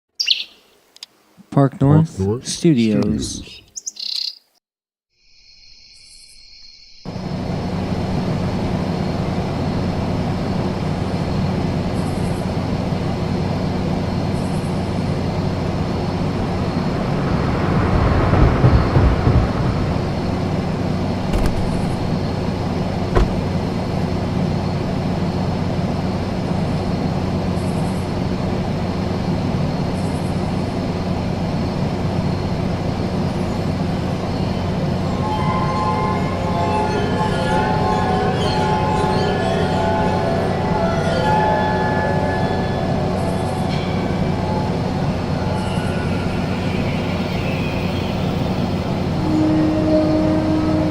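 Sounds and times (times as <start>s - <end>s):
low rumble with hum: 7.1s - 35.1s
sharp knocks: 21.3s - 22.2s, 23.1s - 23.6s.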